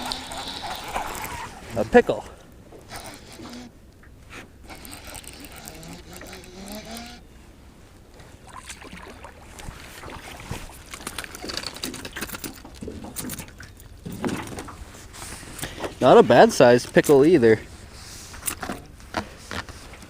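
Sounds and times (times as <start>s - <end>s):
fishing reel clicks: 2.9s - 3.7s, 4.7s - 7.2s.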